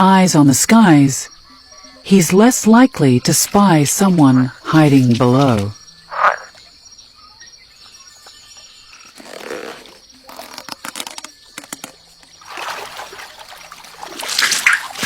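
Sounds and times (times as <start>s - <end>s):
water splashing and trickling: 10.2s - 15.0s
loud water splash: 12.4s - 15.0s.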